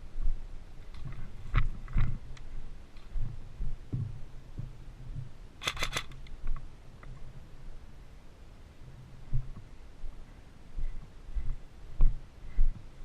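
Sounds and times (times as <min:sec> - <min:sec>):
low thuds: 0:03.1 - 0:05.4
sharp clicks: 0:05.6 - 0:06.6.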